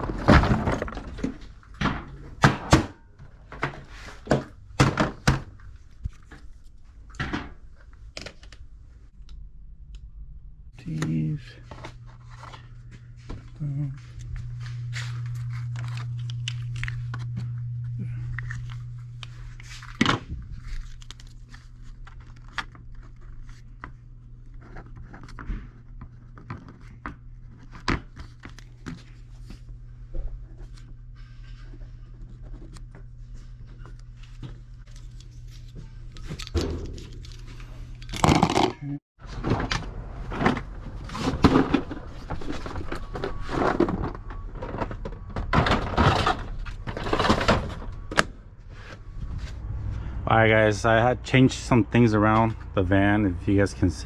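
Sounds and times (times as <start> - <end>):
objects knocking and rustling: 0.0 - 8.6, 35.6 - 49.7
low steady hum: 0.0 - 54.0.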